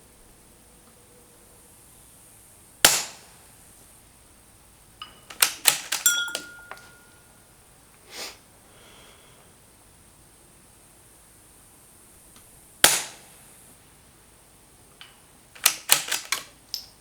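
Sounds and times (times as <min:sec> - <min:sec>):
metallic clicks and clinks: 0:05.0 - 0:07.2.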